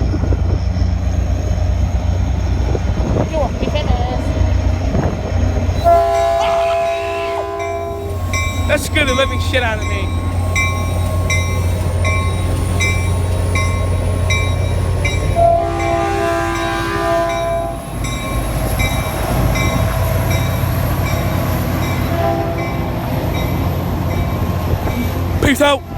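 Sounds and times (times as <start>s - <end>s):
train rumbling past: 0.0s - 25.9s
train horn blast: 5.8s - 9.2s, 15.4s - 17.8s, 22.1s - 22.9s.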